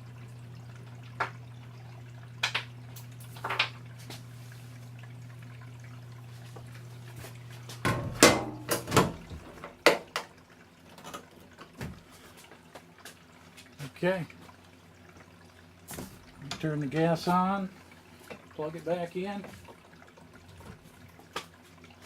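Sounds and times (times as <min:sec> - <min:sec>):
steady low hum: 0:00.0 - 0:09.8.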